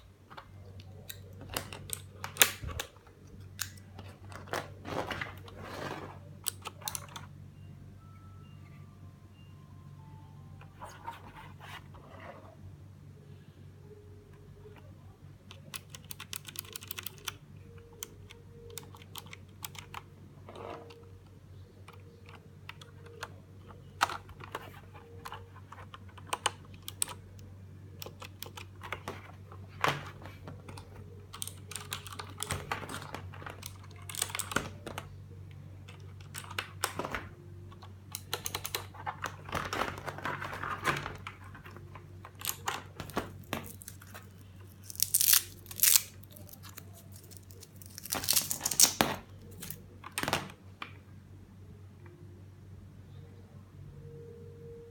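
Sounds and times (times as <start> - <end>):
mechanical keyboard typing: 15.5 - 21.0, 21.8 - 35.1, 35.8 - 44.2.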